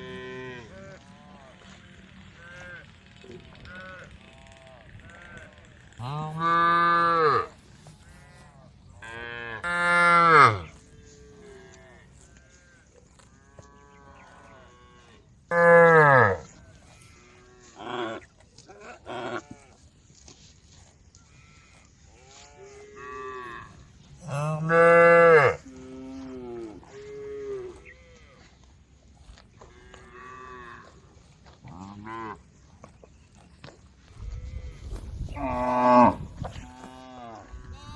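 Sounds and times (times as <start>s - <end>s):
quieter moos from herd: 0.0s - 19.8s, 21.2s - 28.6s
cow mooing loudly: 5.0s - 12.8s, 13.4s - 18.2s, 22.3s - 28.5s, 34.4s - 37.9s.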